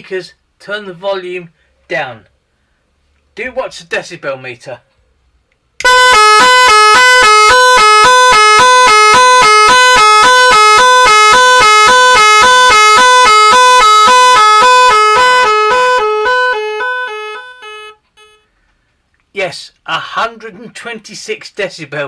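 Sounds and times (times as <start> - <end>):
two-tone electronic car horn: 5.8 - 18.5.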